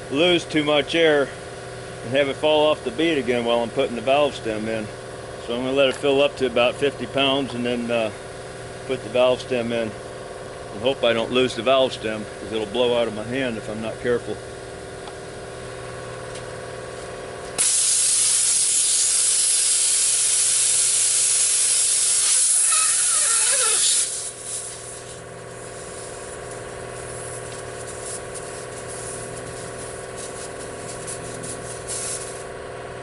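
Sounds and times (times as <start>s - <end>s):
compressed air hissing: 17.6s - 32.6s
short squeal: 22.3s - 24.2s
engine hum: 23.1s - 33.0s.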